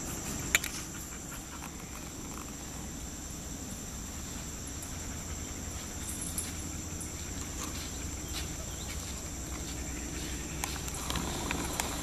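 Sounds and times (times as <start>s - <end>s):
faint footsteps: 4.1s - 12.0s.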